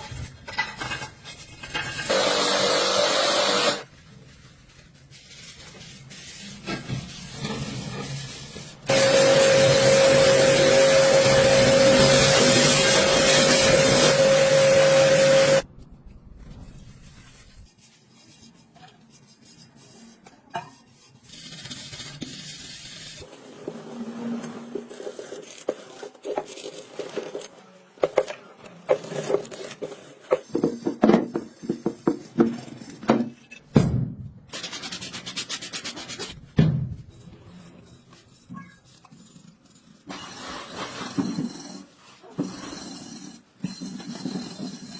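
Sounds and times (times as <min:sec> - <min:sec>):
rubbing and scrubbing: 0:03.8 - 0:15.6, 0:34.5 - 0:44.9
pressure washer spraying: 0:08.9 - 0:15.6.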